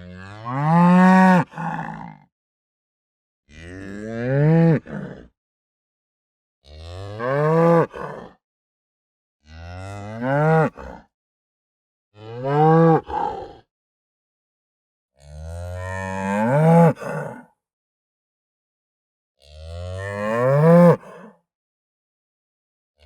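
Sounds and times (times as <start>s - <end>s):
cow mooing: 9.4s - 10.8s, 15.2s - 17.0s, 19.6s - 21.0s.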